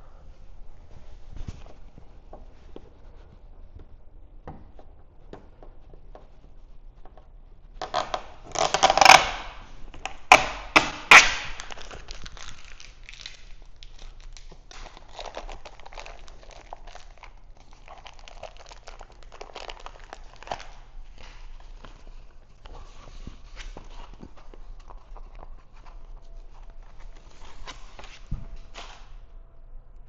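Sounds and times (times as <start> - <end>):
soft rustles and taps: 0.7 - 7.9
film crinkling: 7.6 - 29.2
film snapping: 7.8 - 21.5
film ripping as it peels: 7.8 - 22.1.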